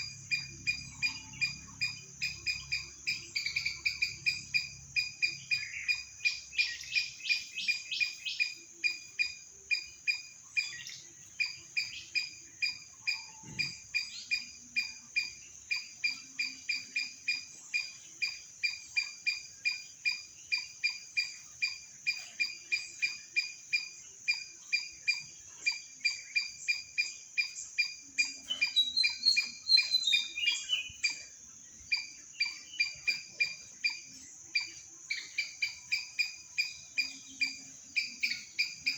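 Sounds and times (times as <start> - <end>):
bird call: 10.6 - 23.5, 25.1 - 38.9.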